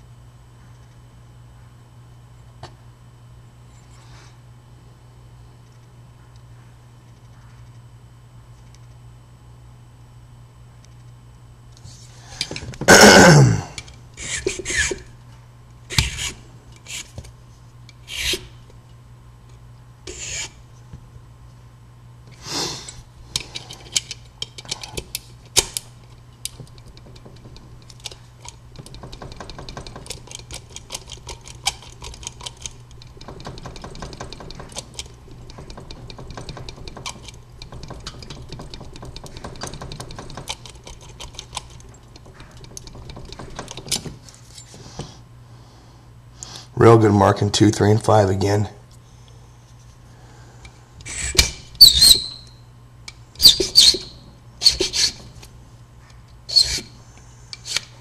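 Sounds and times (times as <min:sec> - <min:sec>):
knocks and clicks: 0:28.8 - 0:44.2.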